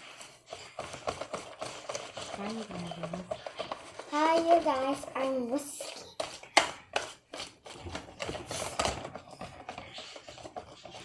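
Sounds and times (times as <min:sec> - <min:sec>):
utensil tapping and scraping container: 0:00.0 - 0:11.0.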